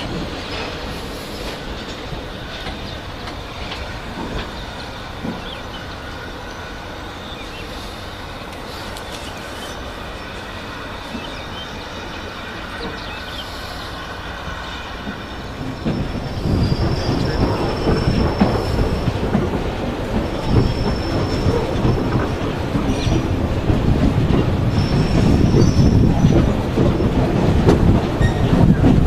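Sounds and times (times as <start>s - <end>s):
train wheels clattering: 0.0s - 29.0s
high wheel squeal: 24.6s - 26.3s.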